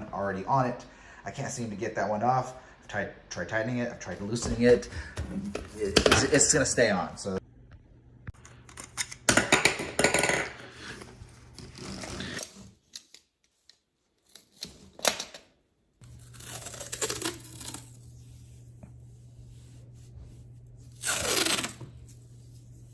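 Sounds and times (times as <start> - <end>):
steady low hum: 16.0 - 22.9.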